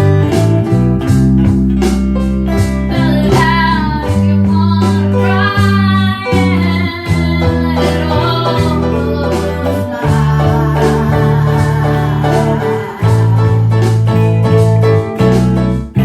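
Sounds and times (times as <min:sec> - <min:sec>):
bass: 0:00.0 - 0:16.0
guitar: 0:00.0 - 0:16.0
steady drum beat: 0:00.0 - 0:16.0
person singing: 0:02.9 - 0:14.5.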